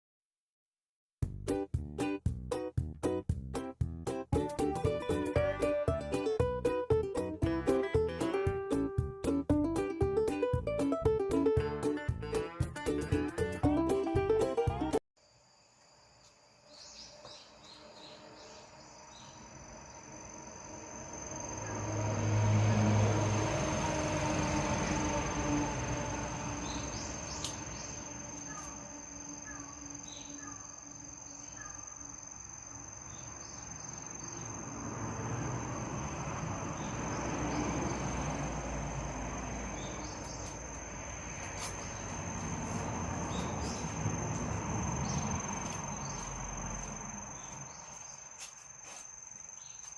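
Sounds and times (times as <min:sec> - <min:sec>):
crickets trilling: 0:15.2 - 0:49.9
low outdoor rumble: 0:34.4 - 0:48.1.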